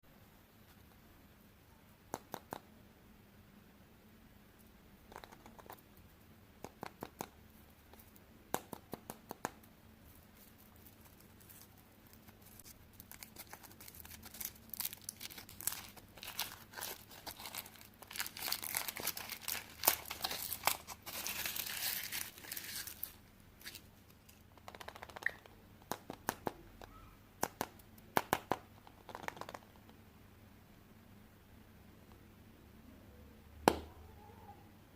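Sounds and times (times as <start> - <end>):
wrapper crinkling and tearing: 10.4 - 24.4.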